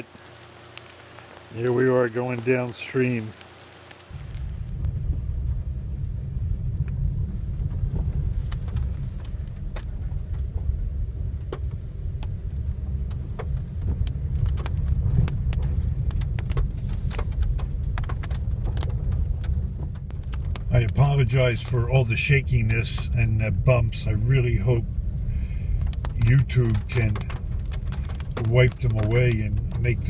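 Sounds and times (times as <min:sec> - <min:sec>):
low road rumble: 0:00.0 - 0:30.0.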